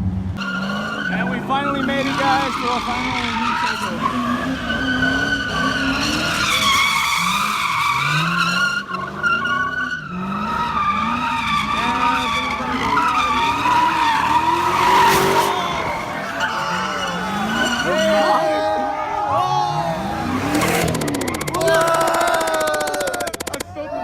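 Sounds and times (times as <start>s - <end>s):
car tyres squealing: 0.4s - 23.8s
car engine revving: 19.7s - 23.7s.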